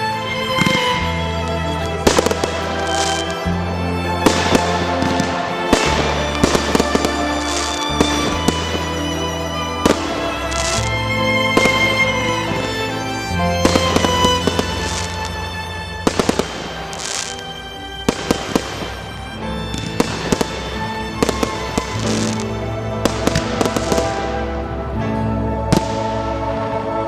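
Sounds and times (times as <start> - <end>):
music soundtrack: 0.0 - 27.0
fireworks bursting and crackling: 0.6 - 13.0, 13.6 - 17.4, 18.0 - 19.1, 19.7 - 24.4.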